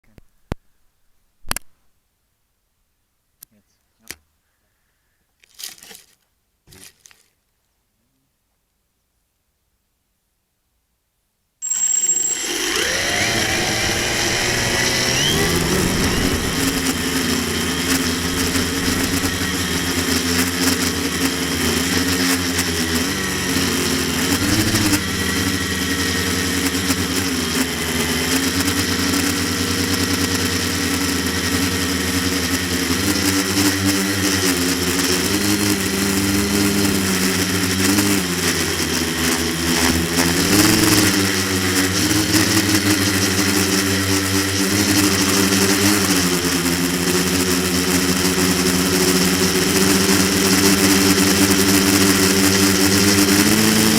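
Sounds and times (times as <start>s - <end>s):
drone propellers humming: 11.6s - 53.9s.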